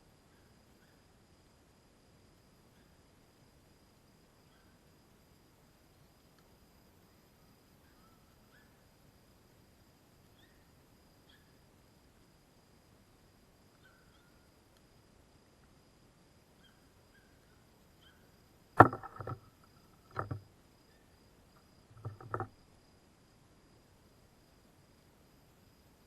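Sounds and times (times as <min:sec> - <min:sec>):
knocks with ringing tone: 0:18.8 - 0:19.4, 0:20.1 - 0:20.4, 0:22.0 - 0:22.5.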